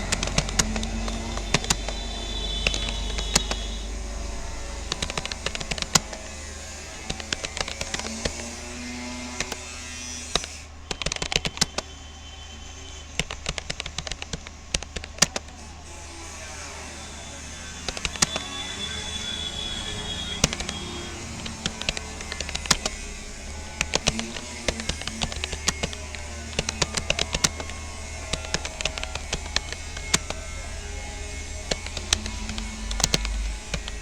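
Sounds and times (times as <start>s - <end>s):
keyboard key clicks: 0.0s - 3.8s, 4.7s - 6.4s, 7.0s - 9.7s, 10.3s - 11.9s, 13.2s - 15.6s, 17.8s - 18.6s, 20.2s - 23.2s, 23.8s - 30.6s, 31.4s - 34.0s.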